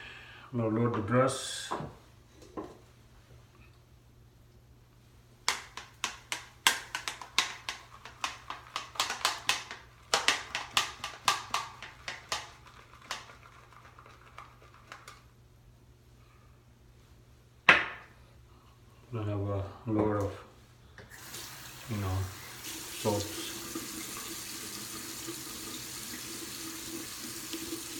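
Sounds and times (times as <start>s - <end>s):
shaving brush on soap: 5.7s - 15.2s.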